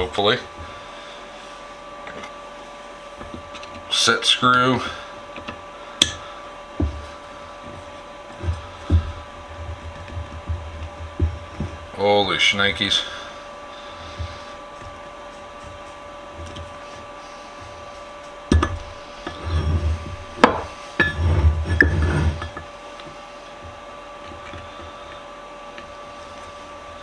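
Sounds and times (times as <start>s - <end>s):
steady electrical hum: 0.0s - 27.0s
tools clanking against metal vise: 18.5s - 22.7s.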